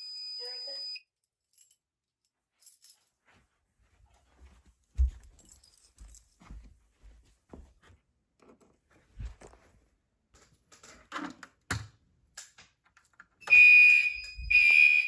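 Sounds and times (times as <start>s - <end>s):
fire alarm tone pulses: 13.4s - 15.0s.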